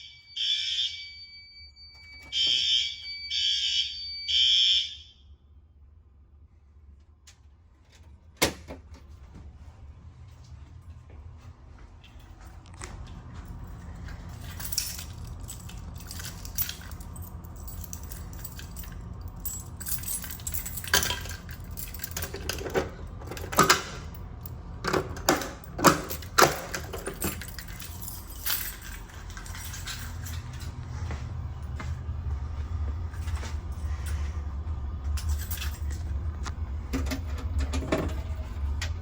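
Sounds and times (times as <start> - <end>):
low steady hum: 0.0 - 39.0
metallic clinks and rattles: 12.1 - 30.9, 35.0 - 38.8.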